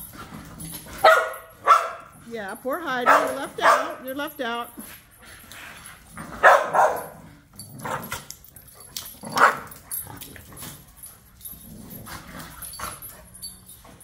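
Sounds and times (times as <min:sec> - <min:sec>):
dogs barking: 0:00.9 - 0:02.2, 0:02.9 - 0:04.1, 0:06.3 - 0:07.2, 0:09.3 - 0:09.8.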